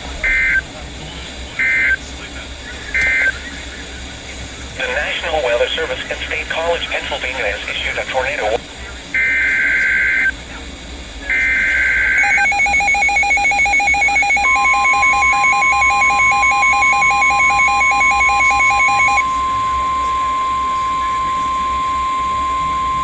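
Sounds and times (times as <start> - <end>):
rapid electronic alarm beeping: 0.2 - 0.7, 1.6 - 2.0, 2.9 - 3.4, 9.1 - 10.4, 11.2 - 23.0
steady warning alarm tone: 0.2 - 0.7, 1.6 - 2.0, 2.9 - 3.4, 9.1 - 10.4, 11.2 - 23.0
warbling data tone: 9.2 - 10.4, 11.3 - 23.0.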